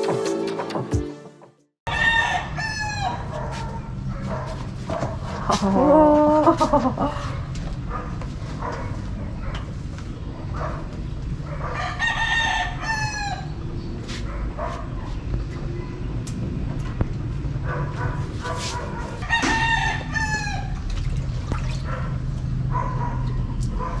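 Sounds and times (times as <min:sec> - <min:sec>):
rooster crowing: 0:01.9 - 0:03.3, 0:11.7 - 0:13.6, 0:19.2 - 0:20.8.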